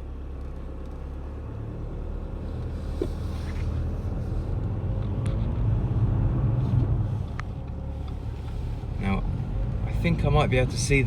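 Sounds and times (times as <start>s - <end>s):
car engine rumble: 0.0s - 11.0s
road noise: 0.0s - 11.0s.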